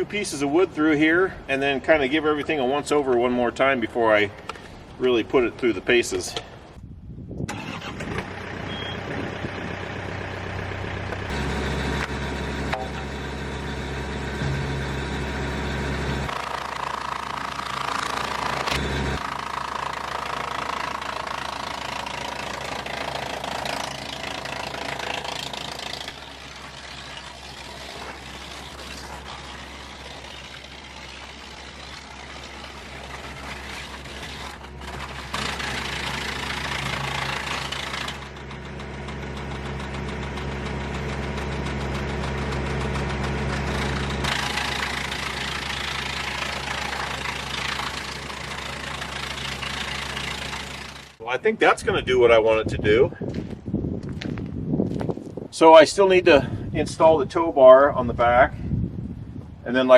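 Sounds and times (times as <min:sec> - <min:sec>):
tractor engine hum: 0:07.4 - 0:57.4
wood chipper chipping wood: 0:07.5 - 0:51.3.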